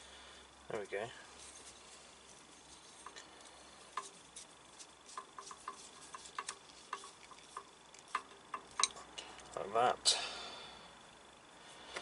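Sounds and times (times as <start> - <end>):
small clicks and taps: 5.1 - 9.1.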